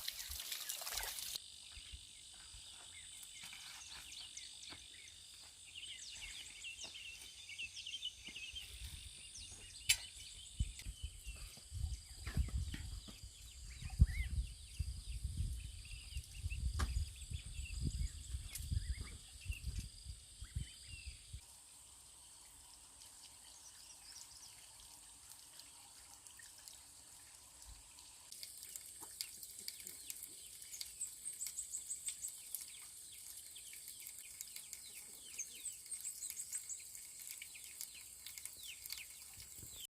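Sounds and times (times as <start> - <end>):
bird chirps: 0.1 - 21.4.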